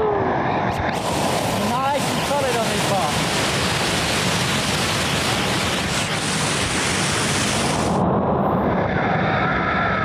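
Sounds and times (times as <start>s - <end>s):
waterfall rushing: 0.7s - 7.9s.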